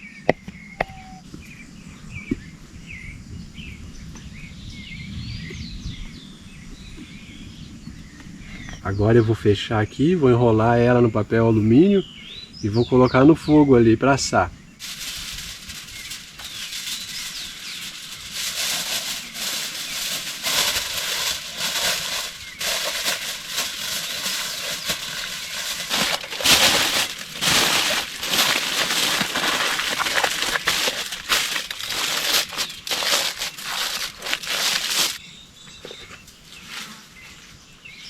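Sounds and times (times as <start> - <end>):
aluminium foil crinkling: 14.8 - 35.2.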